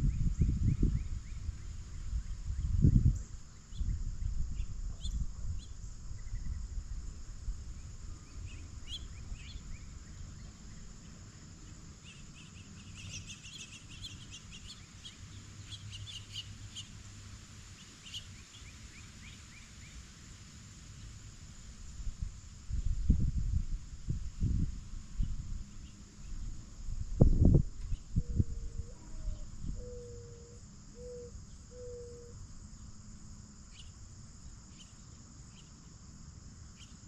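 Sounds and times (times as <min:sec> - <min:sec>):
birds chirping: 0:08.3 - 0:17.0.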